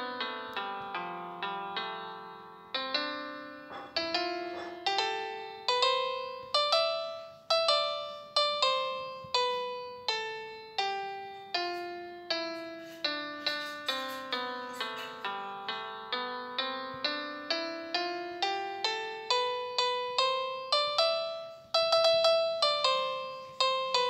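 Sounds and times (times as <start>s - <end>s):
slow piano melody: 0.0s - 24.0s.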